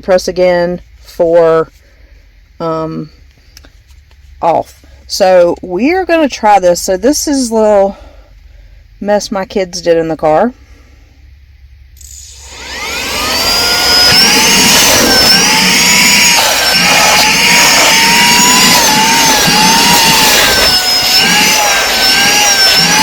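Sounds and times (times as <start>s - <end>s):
handheld vacuum cleaner whining: 12.0s - 23.0s.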